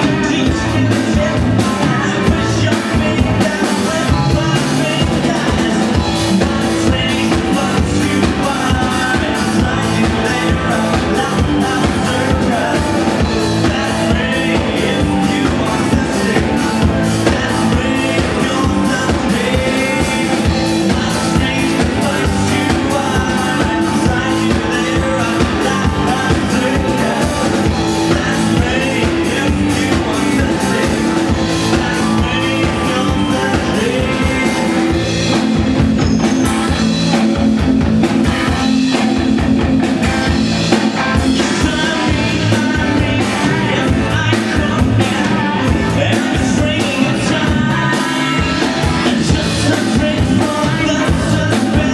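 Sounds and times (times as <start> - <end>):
drum kit beat: 0.0 - 51.9
rock song with singing: 0.0 - 51.9.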